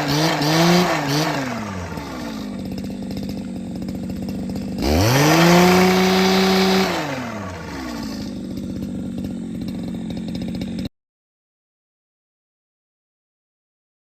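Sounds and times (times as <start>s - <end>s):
small engine idling and revving: 0.0s - 10.9s.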